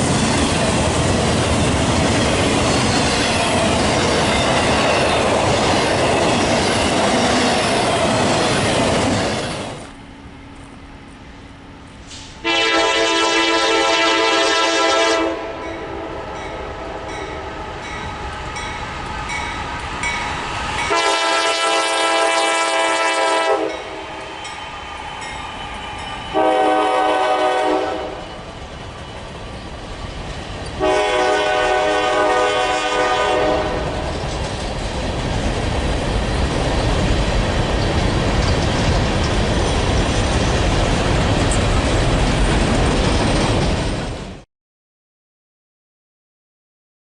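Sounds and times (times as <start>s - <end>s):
train rumbling over rail joints: 0.0s - 44.4s
locomotive air horn blasts: 12.2s - 17.5s, 20.9s - 24.4s, 26.3s - 28.3s, 30.8s - 34.0s.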